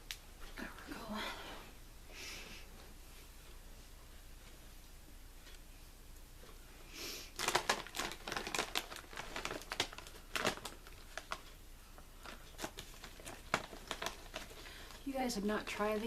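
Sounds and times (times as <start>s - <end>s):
potato chips crunching: 7.4s - 11.5s, 12.2s - 15.0s.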